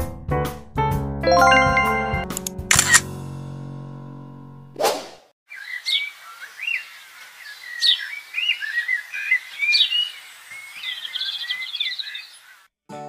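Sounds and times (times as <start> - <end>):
steady outdoor hiss: 5.5 - 12.6
birds chirping and warbling: 5.5 - 12.7.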